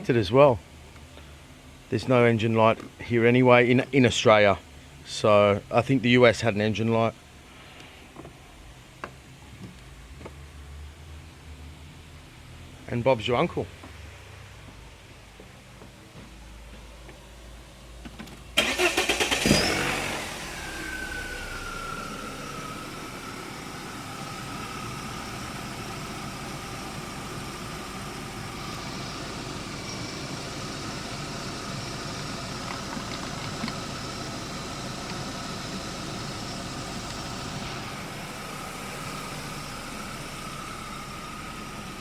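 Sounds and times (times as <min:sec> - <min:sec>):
car engine idling with whine: 0:07.2 - 0:42.0
engine cranking on starter: 0:18.6 - 0:22.8.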